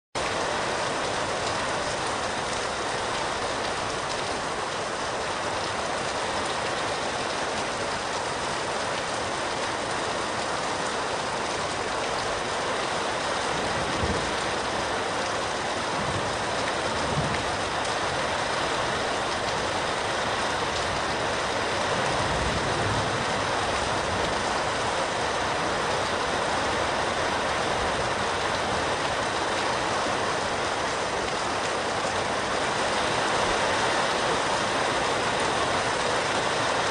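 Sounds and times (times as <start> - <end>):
heavy rain falling: 0.2 - 36.9
low thunder rumbles: 13.6 - 14.5, 17.0 - 17.6, 22.0 - 24.6.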